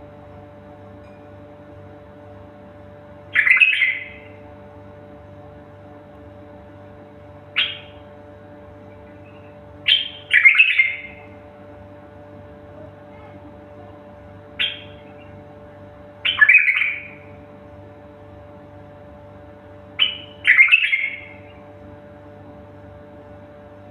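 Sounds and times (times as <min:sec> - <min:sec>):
low electrical hum: 0:00.0 - 0:23.9
bird squawking: 0:03.3 - 0:04.4, 0:07.6 - 0:08.0, 0:09.0 - 0:11.3, 0:14.6 - 0:15.4, 0:16.2 - 0:17.3, 0:20.0 - 0:21.5.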